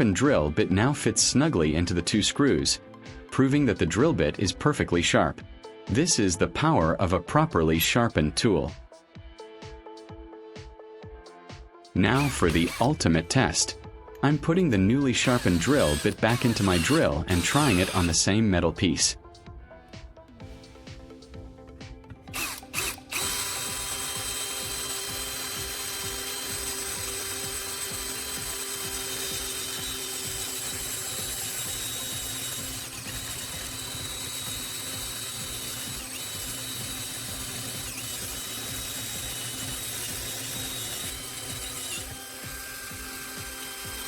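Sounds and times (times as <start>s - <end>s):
electric drill boring through metal: 12.1s - 13.7s, 15.1s - 18.3s, 22.3s - 44.0s
sharp clicks: 22.3s - 44.0s.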